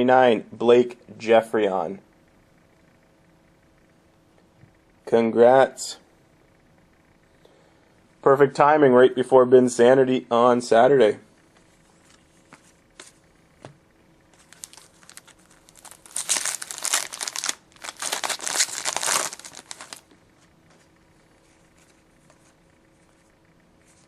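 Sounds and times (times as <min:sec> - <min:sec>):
plastic wrapper tearing and crinkling: 0:14.4 - 0:20.0.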